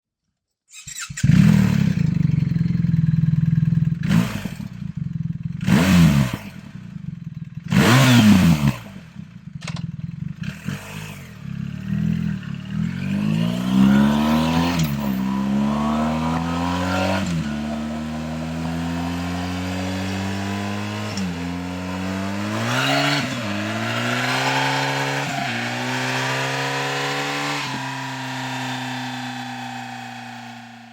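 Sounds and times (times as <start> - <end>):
motorcycle engine revving: 0.9 - 30.9.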